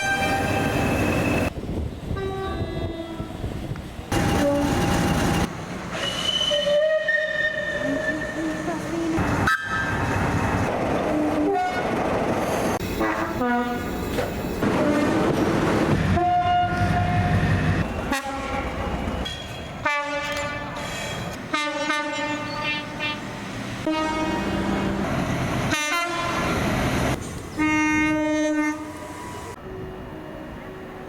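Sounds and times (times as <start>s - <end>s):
trains running on track: 0.0s - 31.0s
train horn blasts: 6.1s - 8.4s, 13.0s - 13.9s, 16.1s - 17.4s, 18.1s - 18.8s, 19.8s - 20.8s, 21.5s - 23.2s, 23.8s - 25.0s, 25.7s - 26.6s, 27.6s - 29.0s.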